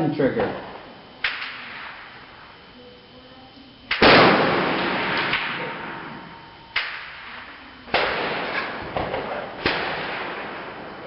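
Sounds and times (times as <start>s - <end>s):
rifle shots with echo: 0.5s - 2.3s, 3.9s - 11.0s
faint rifle shot: 3.9s - 11.0s.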